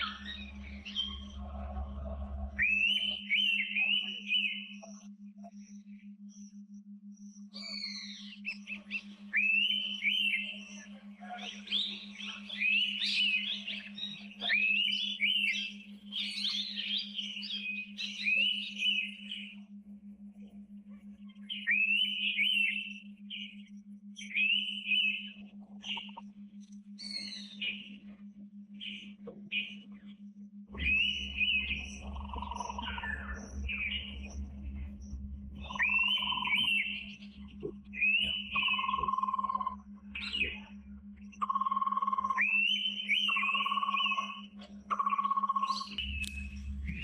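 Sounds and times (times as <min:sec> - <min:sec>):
other birds chirping: 0:00.0 - 0:05.0, 0:21.0 - 0:47.0
steady low hum: 0:00.0 - 0:47.0
bird whistling call: 0:02.6 - 0:04.7, 0:30.8 - 0:34.1, 0:35.6 - 0:37.1, 0:37.9 - 0:40.6, 0:41.4 - 0:47.0.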